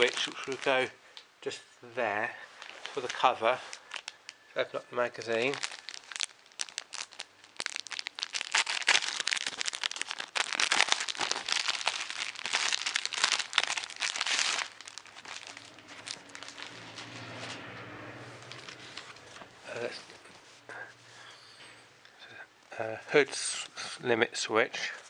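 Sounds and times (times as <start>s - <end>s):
packaging crinkling and rustling: 0.0s - 0.9s, 2.5s - 20.5s.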